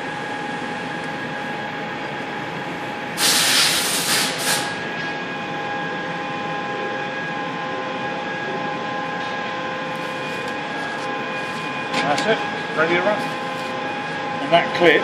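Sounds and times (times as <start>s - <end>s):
machinery humming: 0.0s - 15.0s
loud hissing burst: 3.2s - 4.7s.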